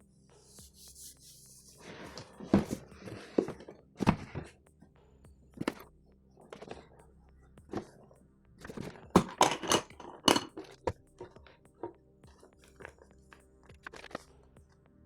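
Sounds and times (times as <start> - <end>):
hard objects knocking and clunking: 2.1 - 4.5, 8.6 - 12.0.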